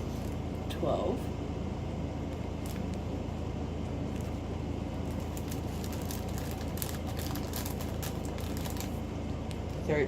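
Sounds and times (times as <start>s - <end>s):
low hum: 0.0s - 10.0s
plastic bags clicking and rustling: 5.1s - 9.0s.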